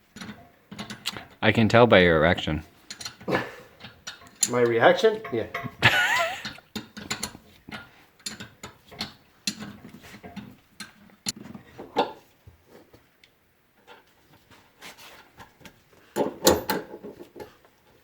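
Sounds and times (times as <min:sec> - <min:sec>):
hand tools clicking and knocking: 0:00.0 - 0:01.4, 0:02.9 - 0:12.2, 0:15.6 - 0:17.7.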